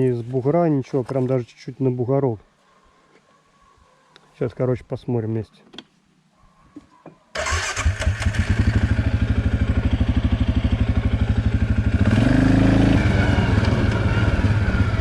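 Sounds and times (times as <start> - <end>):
atv engine running: 7.4 - 15.0.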